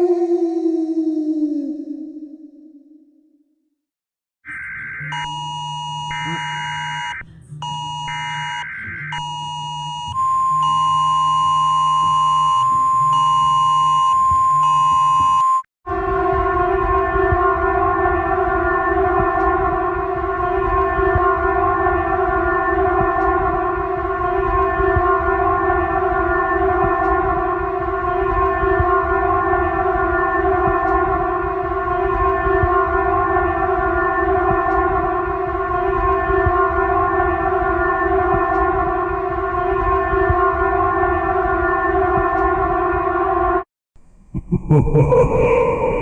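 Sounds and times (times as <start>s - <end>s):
steady pitched drone tone: 15.9s - 43.5s, 44.2s - 46.0s
low rumble: 44.3s - 46.0s.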